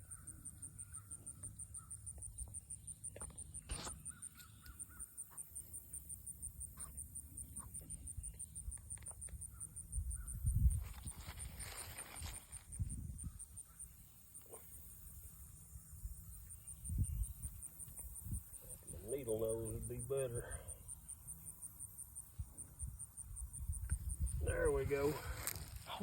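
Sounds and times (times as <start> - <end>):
crows cawing: 4.1 - 5.2
insect ticking high-pitched: 14.7 - 24.5.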